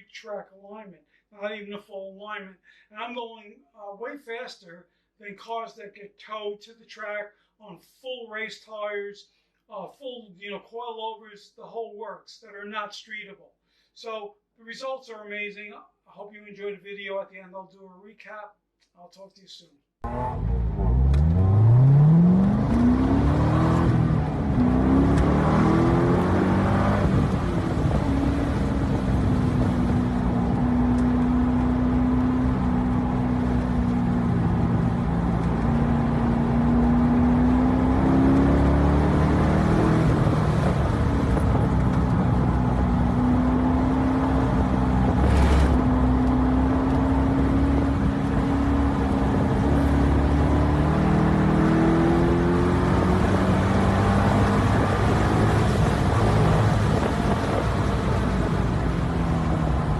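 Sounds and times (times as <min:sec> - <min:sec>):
car engine accelerating hard: 0:20.0 - 0:59.9.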